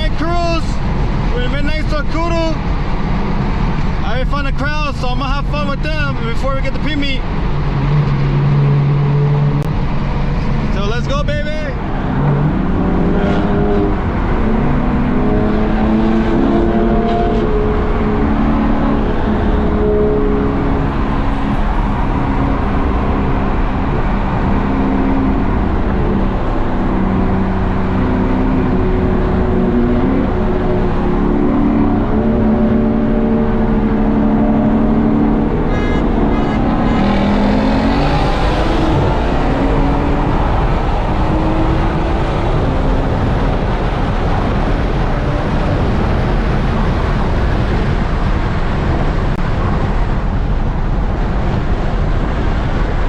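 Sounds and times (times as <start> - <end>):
car engine and exhaust driving off: 11.8 - 53.0.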